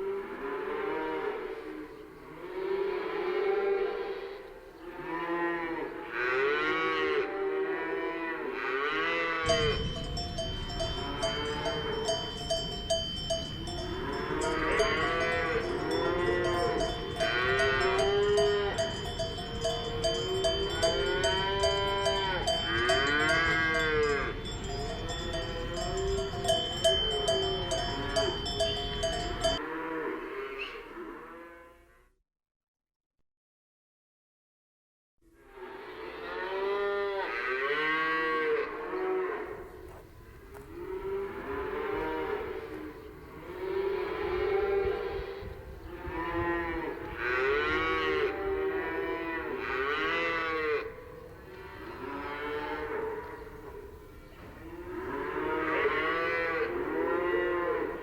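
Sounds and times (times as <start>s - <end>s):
cattle mooing: 0.1s - 12.8s, 13.4s - 31.9s, 35.9s - 39.6s, 40.5s - 53.9s, 54.7s - 58.0s
cowbells clanking: 9.4s - 29.6s.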